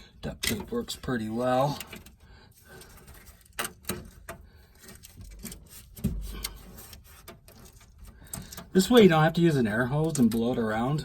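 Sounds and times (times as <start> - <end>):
duct tape rubbing and rustling: 0.6 - 9.2.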